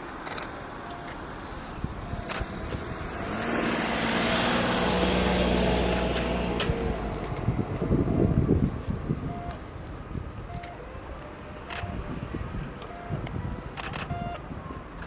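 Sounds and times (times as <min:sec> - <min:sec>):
vehicle passing by: 0:01.3 - 0:09.1.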